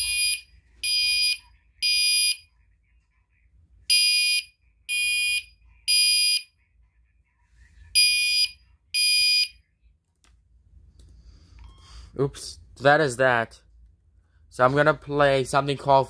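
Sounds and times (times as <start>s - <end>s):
fire alarm horn beeping: 0.0s - 2.5s, 3.9s - 6.5s, 8.0s - 9.6s.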